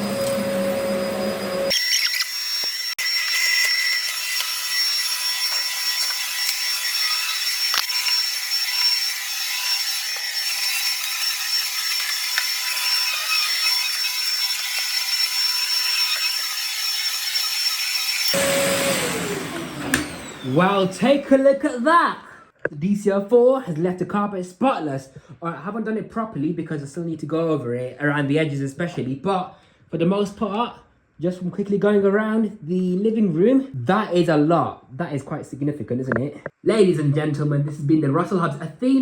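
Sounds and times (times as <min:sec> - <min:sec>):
vacuum cleaner on carpet: 0:00.0 - 0:01.7, 0:18.3 - 0:21.2.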